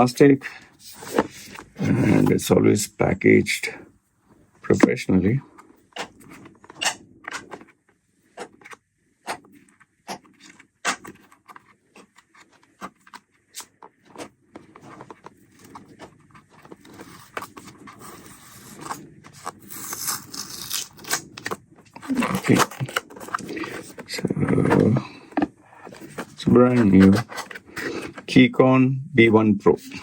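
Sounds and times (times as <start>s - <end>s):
cardboard box and wrapping handled: 10.9s - 25.1s, 25.7s - 28.3s.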